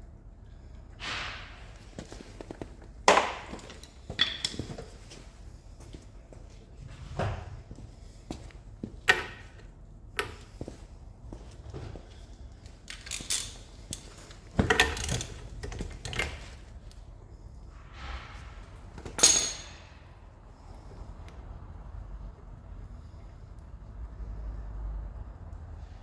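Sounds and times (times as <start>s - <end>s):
metal tools clinking and clanking: 2.0s - 5.0s, 12.6s - 16.7s, 19.0s - 20.1s
loud ringing metal clank: 19.1s - 20.1s.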